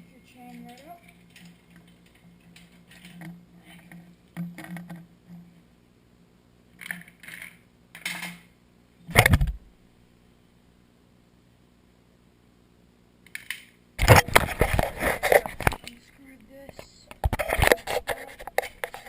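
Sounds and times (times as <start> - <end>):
metallic scraping: 14.0 - 19.0.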